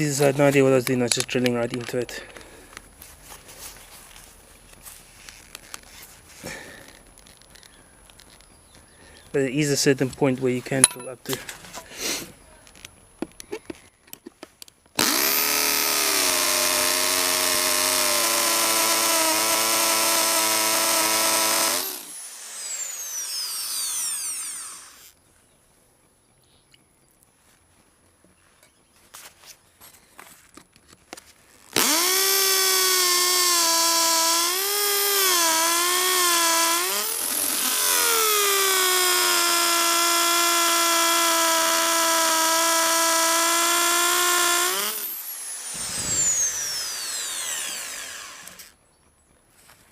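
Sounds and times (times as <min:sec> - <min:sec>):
electric drill whining: 0:15.0 - 0:25.2, 0:31.7 - 0:48.8.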